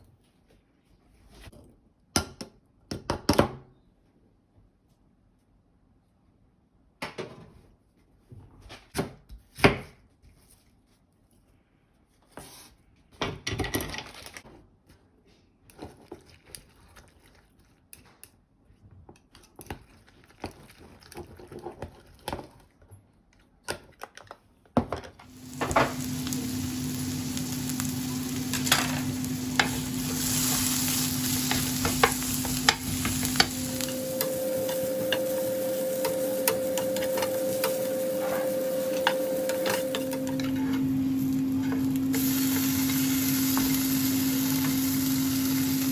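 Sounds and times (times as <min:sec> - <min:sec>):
food sizzling in frying pan: 0:25.3 - 0:45.9
steady hum: 0:25.3 - 0:45.9.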